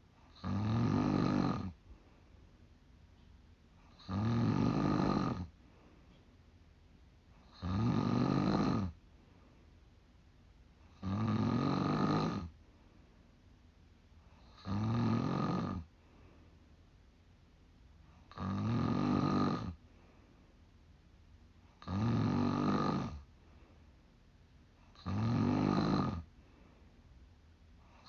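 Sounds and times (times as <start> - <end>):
woman snoring: 0.3 - 1.8, 3.9 - 5.5, 7.4 - 9.0, 11.0 - 12.5, 14.4 - 15.9, 18.3 - 19.8, 21.8 - 23.3, 24.9 - 26.3.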